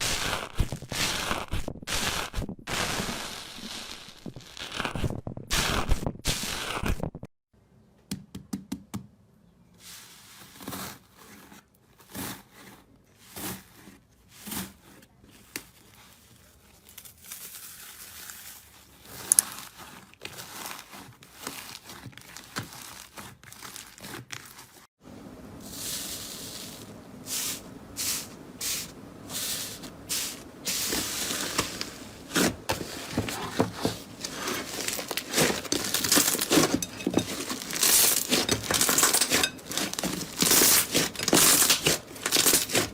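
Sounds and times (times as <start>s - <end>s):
slime crackling and popping: 0.0s - 7.1s, 16.9s - 24.8s, 34.2s - 42.9s.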